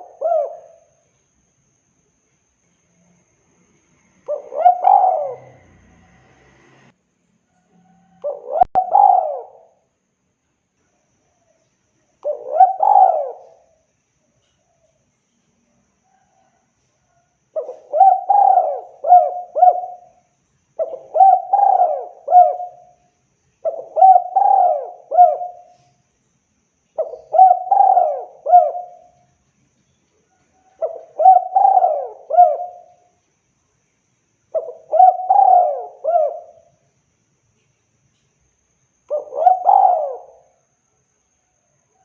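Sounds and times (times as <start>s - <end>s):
dove cooing: 0.0s - 1.0s, 4.2s - 6.2s, 8.1s - 9.8s, 12.2s - 13.8s, 16.1s - 20.2s, 20.8s - 23.0s, 23.6s - 25.9s, 27.0s - 29.2s, 30.5s - 33.1s, 34.5s - 36.8s, 39.1s - 40.6s.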